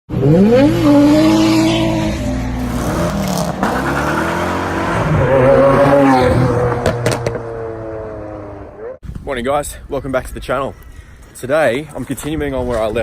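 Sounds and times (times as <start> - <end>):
car engine revving hard: 0.1 - 8.7.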